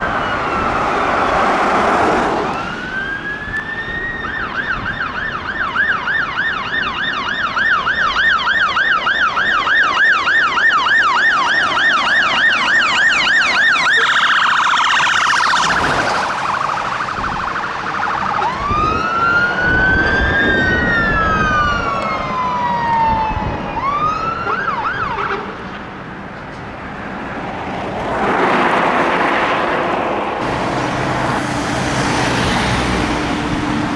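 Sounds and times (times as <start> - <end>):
electronic siren wailing and yelping: 0.0 - 25.6
road noise: 0.0 - 33.9.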